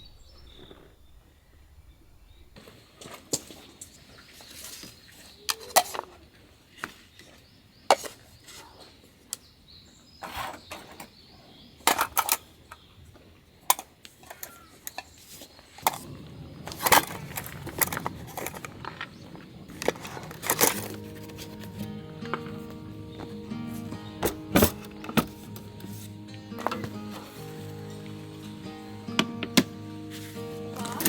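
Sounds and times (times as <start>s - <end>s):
camping gear knocking and clinking: 11.9s - 12.9s, 13.7s - 31.0s
rustling: 15.1s - 31.0s.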